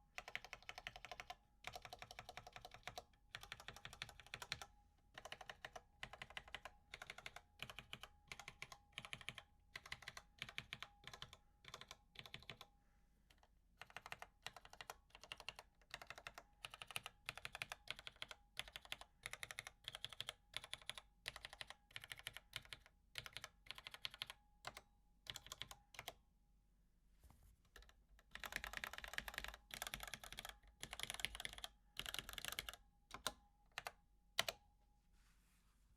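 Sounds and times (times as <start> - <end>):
keyboard keystrokes: 27.7 - 34.6.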